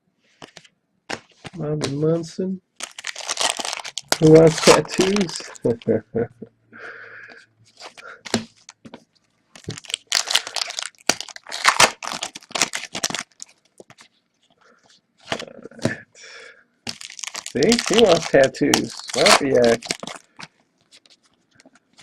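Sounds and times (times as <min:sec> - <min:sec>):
wrapper tearing and crinkling: 0:02.8 - 0:05.8, 0:09.6 - 0:14.1, 0:16.9 - 0:22.0.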